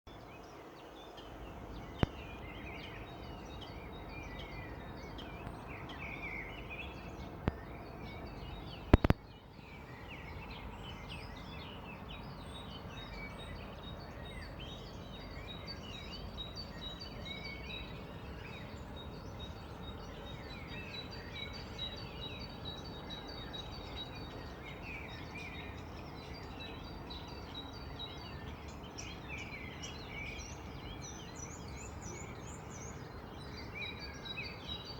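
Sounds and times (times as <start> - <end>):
outdoor background hiss: 0.1 - 34.9
small birds chirping: 0.1 - 34.9
sharp clicks: 9.0 - 9.2.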